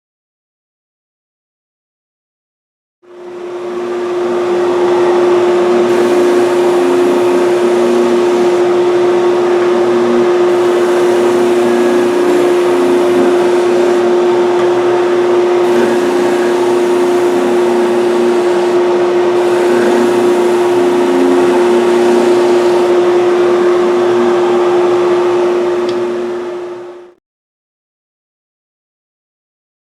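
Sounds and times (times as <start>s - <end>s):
power sander motor hum: 3.1s - 27.0s
abrasive rasping on wood: 5.9s - 8.8s, 10.5s - 14.2s, 15.6s - 23.0s.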